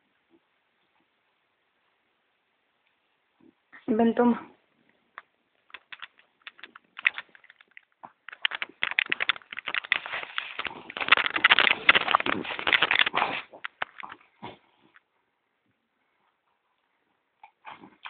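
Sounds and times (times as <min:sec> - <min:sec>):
dog crunching hard biscuit: 0:05.7 - 0:14.5.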